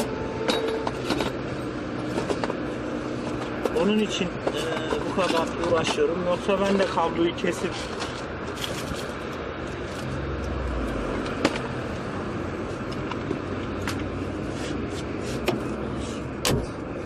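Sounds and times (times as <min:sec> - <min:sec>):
road traffic hum: 0:00.0 - 0:17.0
vehicle passing: 0:09.4 - 0:16.2.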